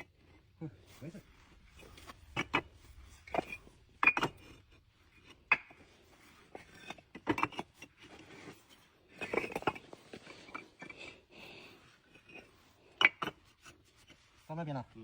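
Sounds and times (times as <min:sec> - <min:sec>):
bricks clinking and knocking: 0:01.7 - 0:11.2, 0:12.0 - 0:14.2.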